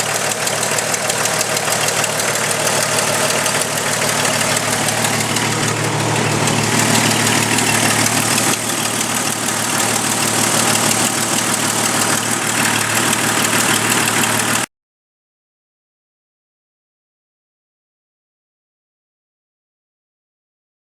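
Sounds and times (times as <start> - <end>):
car engine running: 0.0 - 14.7
fast exhaust ticking: 0.0 - 14.7.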